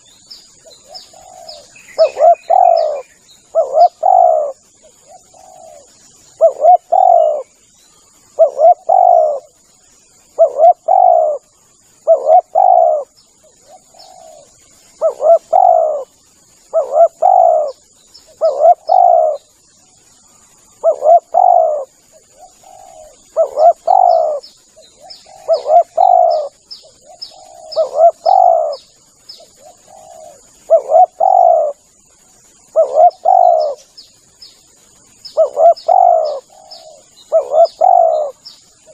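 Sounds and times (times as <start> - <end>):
faint small bird chirps: 0.0 - 38.9
dove cooing: 0.6 - 7.5, 8.3 - 9.6, 10.3 - 19.5, 20.7 - 31.8, 32.7 - 33.9, 35.3 - 38.9.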